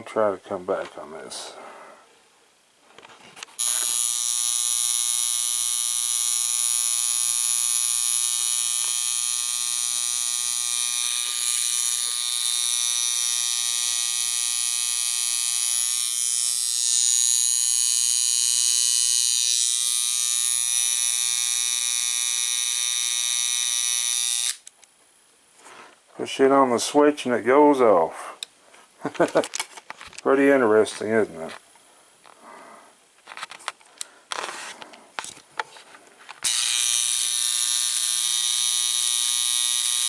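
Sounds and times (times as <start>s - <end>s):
electric alarm clock buzzing: 3.6s - 24.6s, 36.4s - 40.0s.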